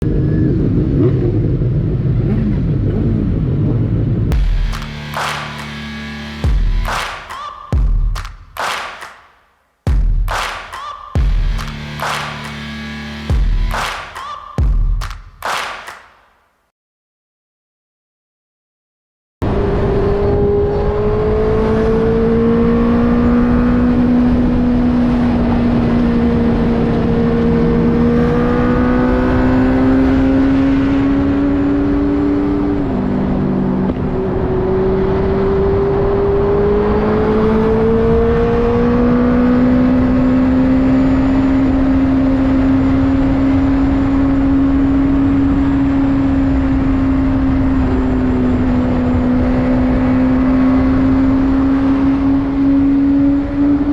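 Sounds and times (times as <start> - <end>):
motorcycle engine running: 0.0 - 7.0, 11.2 - 13.8.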